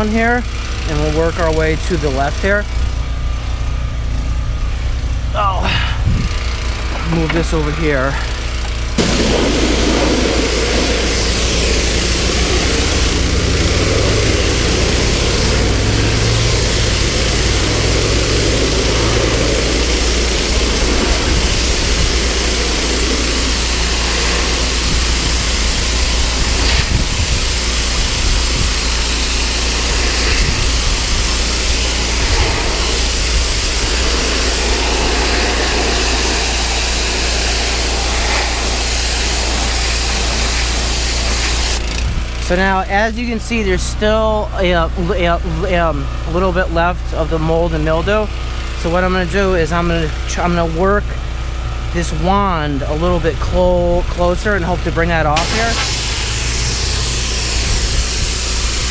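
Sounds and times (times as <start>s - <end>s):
pressure washer engine running: 0.0s - 58.9s
water spraying on wooden boards: 6.3s - 43.1s, 54.1s - 58.9s.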